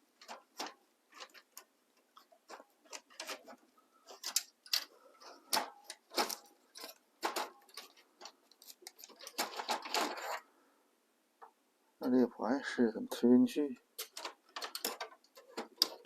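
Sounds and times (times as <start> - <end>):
plastic and metal clicks and knocks: 0.2 - 10.4, 13.8 - 16.0.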